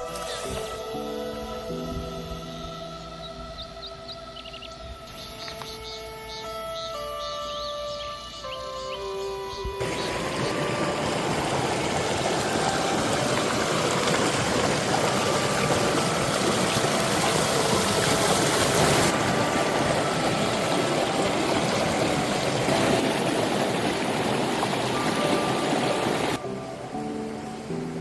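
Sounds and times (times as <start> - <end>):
stream rushing over rocks: 9.8 - 28.0.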